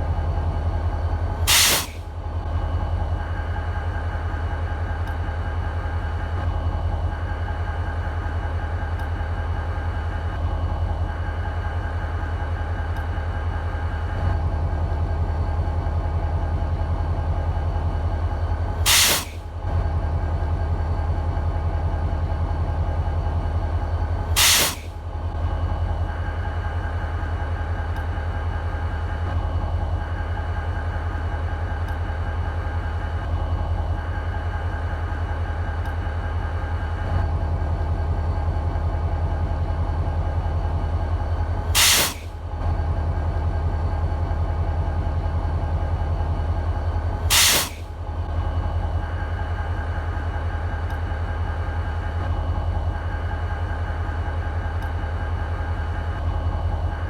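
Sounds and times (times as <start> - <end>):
diesel locomotive idling: 0.0 - 57.0
loud bursts of hiss: 1.5 - 2.0, 18.9 - 19.4, 24.4 - 24.9, 41.8 - 42.3, 47.3 - 47.8.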